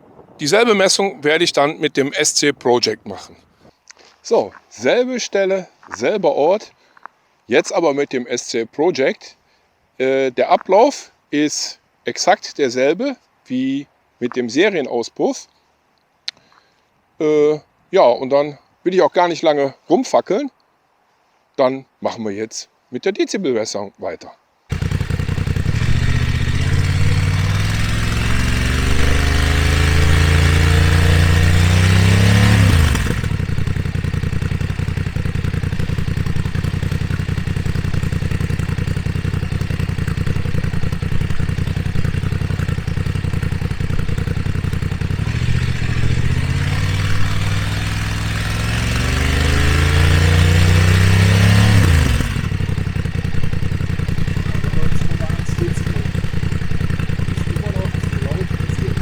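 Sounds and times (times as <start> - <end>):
motorcycle engine revving: 0.4 - 2.3, 24.7 - 59.0
motorcycle engine idling: 24.7 - 59.0.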